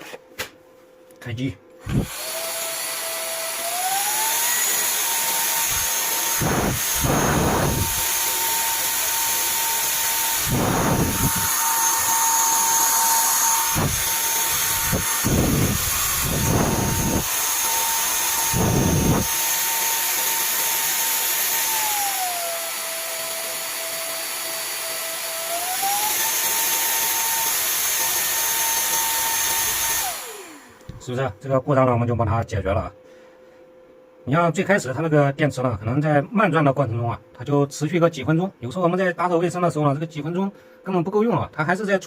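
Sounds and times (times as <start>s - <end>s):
vacuum cleaner motor whining: 1.8s - 31.2s.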